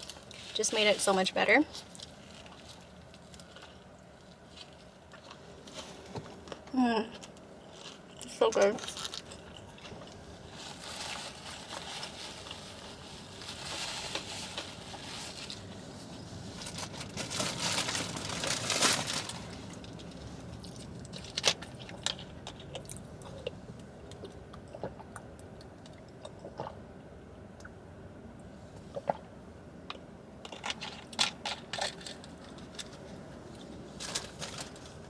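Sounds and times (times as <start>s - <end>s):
chewing a burger: 1.8s - 13.4s, 19.3s - 26.8s.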